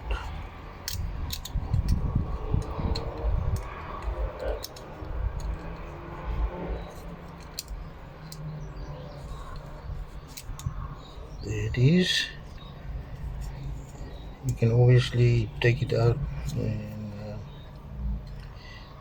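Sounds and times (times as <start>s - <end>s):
small metal parts clicking and scraping: 0.8s - 6.1s, 6.8s - 11.1s.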